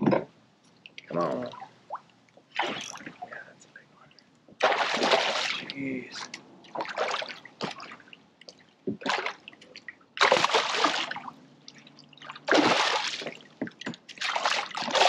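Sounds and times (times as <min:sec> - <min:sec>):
water trickling: 0:00.7 - 0:15.0
fish splashing in water: 0:02.6 - 0:03.0, 0:04.6 - 0:05.8, 0:09.0 - 0:11.3, 0:12.2 - 0:15.0.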